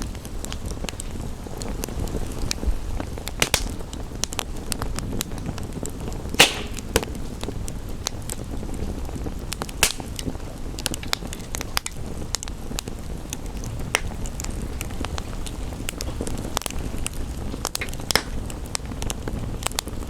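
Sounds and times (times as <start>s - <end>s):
rain hissing: 0.0s - 20.0s
wood fire crackling and popping: 0.0s - 20.0s.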